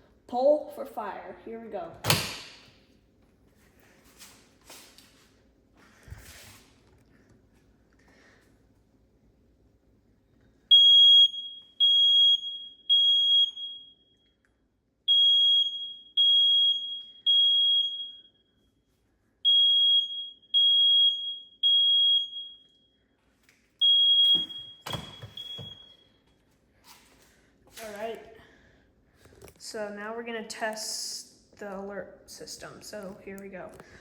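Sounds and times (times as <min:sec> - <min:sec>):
smoke alarm beeping: 0:10.7 - 0:14.4, 0:15.1 - 0:18.6, 0:19.4 - 0:23.0, 0:23.8 - 0:26.4.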